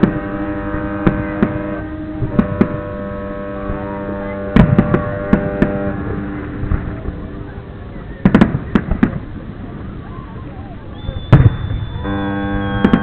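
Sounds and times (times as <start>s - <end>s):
steady chord-like tones: 0.0s - 8.2s
fireworks bangs: 0.0s - 10.2s, 11.0s - 13.0s.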